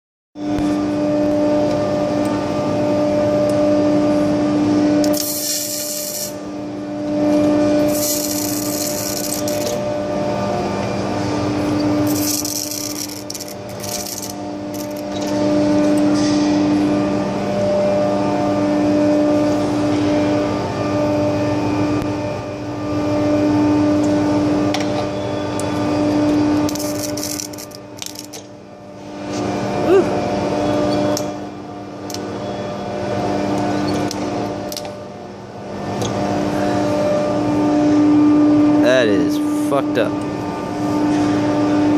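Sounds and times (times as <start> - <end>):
motor sparking crackling hiss: 5.0 - 6.4, 7.8 - 9.8, 12.0 - 15.1, 26.6 - 28.4
sharp electrical snaps: 5.1 - 6.3
electric motor humming: 7.1 - 15.5, 26.3 - 28.4.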